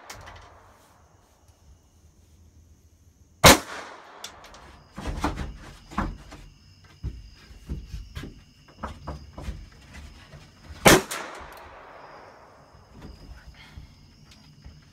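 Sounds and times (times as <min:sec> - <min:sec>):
loud gunshot: 0:03.4 - 0:04.2, 0:10.8 - 0:12.1
knocks and clanks: 0:04.4 - 0:10.8.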